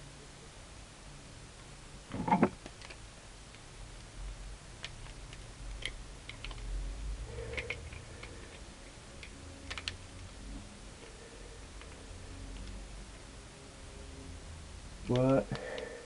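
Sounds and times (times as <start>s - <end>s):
plastic puzzle tiles clicking: 9.2s - 10.0s.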